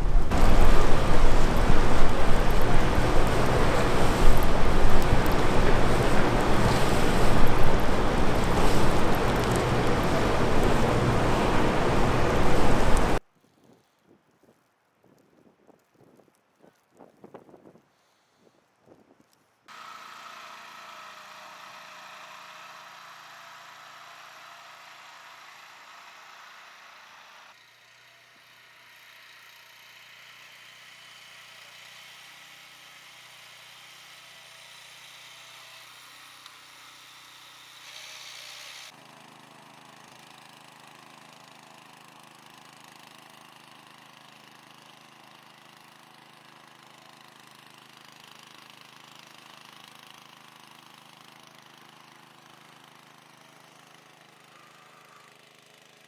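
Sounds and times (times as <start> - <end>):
engine-like running noise: 0.0 - 13.2.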